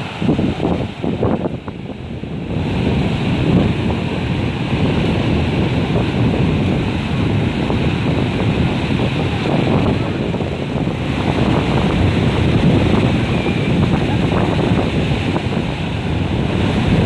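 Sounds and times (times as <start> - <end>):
ocean surf: 0.0 - 17.0
wind buffeting microphone: 0.0 - 17.0.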